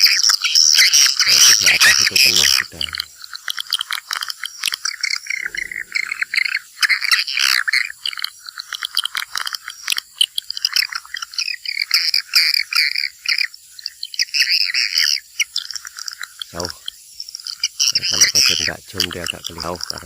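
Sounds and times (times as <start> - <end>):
swiftlets twittering: 0.0 - 3.1, 5.0 - 7.9, 16.4 - 20.0.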